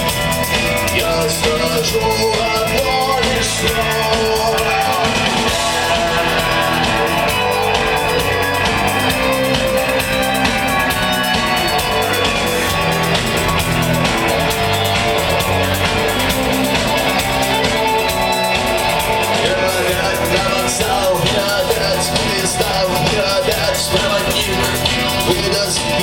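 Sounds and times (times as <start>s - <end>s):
bass notes: 0.0s - 26.0s
drum kit beat: 0.0s - 26.0s
electric guitar: 0.0s - 26.0s.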